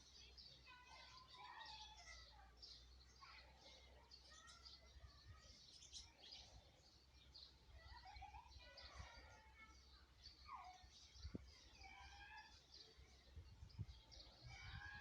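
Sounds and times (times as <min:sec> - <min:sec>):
small birds chirping: 0:00.0 - 0:15.0.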